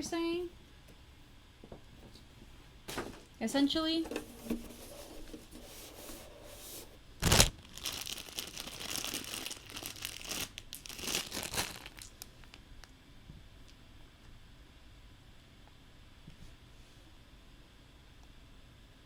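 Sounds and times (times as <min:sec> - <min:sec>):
crinkling and rustling: 0:02.9 - 0:03.4, 0:04.0 - 0:12.6.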